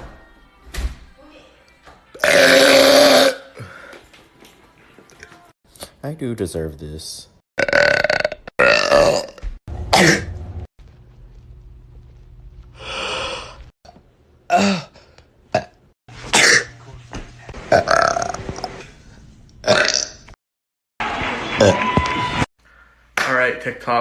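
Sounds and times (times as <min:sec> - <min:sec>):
young men burping loudly: 0:02.2 - 0:03.6, 0:07.6 - 0:09.4.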